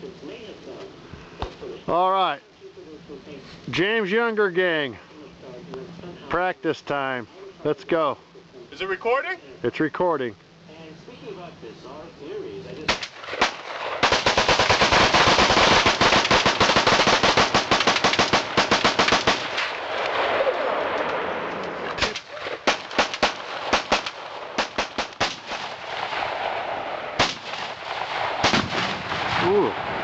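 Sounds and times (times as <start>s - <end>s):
gunshots: 12.9s - 21.3s, 21.9s - 30.0s.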